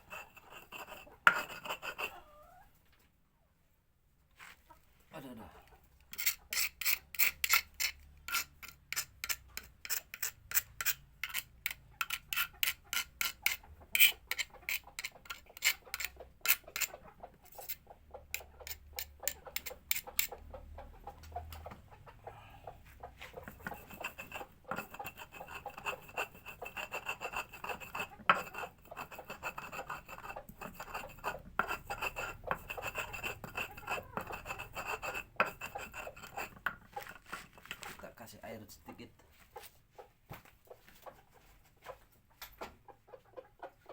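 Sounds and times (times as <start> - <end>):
pestle grinding against stone: 0.0 - 2.2, 6.1 - 20.4, 23.3 - 38.0.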